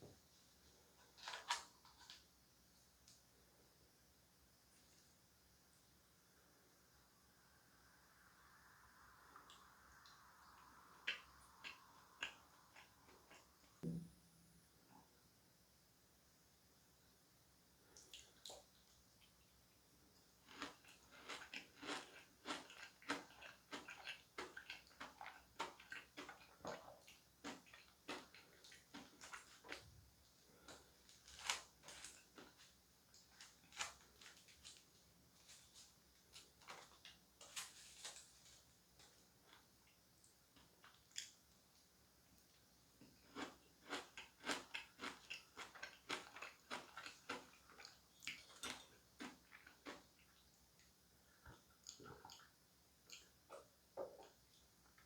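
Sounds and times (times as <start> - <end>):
chewing with mouth clicks: 11.0 - 13.6, 20.5 - 29.8, 43.3 - 55.0.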